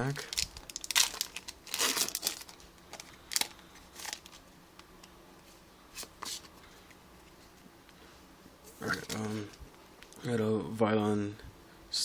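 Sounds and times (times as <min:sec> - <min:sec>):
foil wrapper crinkling: 0:00.0 - 0:04.4.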